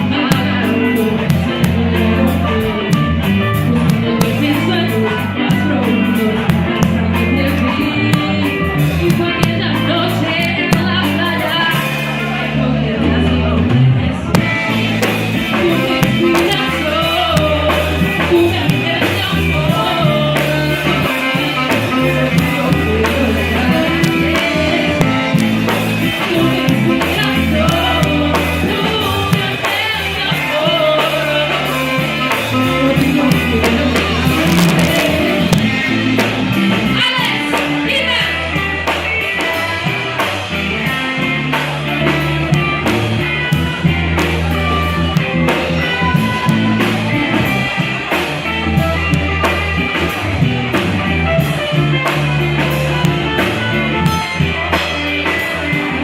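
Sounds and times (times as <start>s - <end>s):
person singing: 0.0s - 56.0s
rock band playing: 0.0s - 56.0s.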